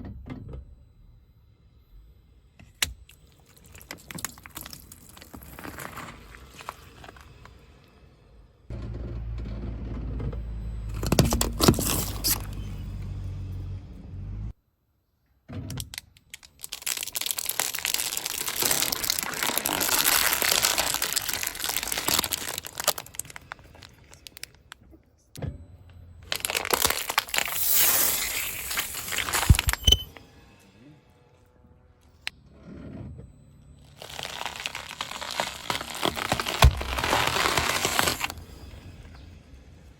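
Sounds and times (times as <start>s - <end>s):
tyres crushing brittle objects: 3.1s - 7.6s, 15.8s - 24.6s, 26.3s - 30.1s, 33.9s - 38.6s
low engine hum: 8.7s - 14.6s.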